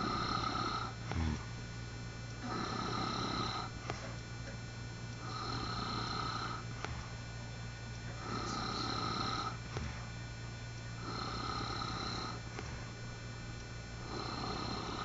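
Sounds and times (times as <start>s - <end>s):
man snoring with rasp: 0.0s - 1.6s, 2.4s - 4.0s, 5.2s - 7.2s, 8.2s - 10.1s, 11.0s - 12.9s, 14.0s - 15.0s.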